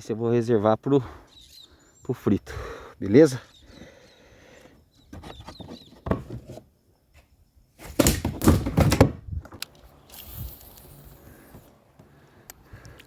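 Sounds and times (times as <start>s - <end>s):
thuds and knocks on kayak: 7.9s - 9.2s.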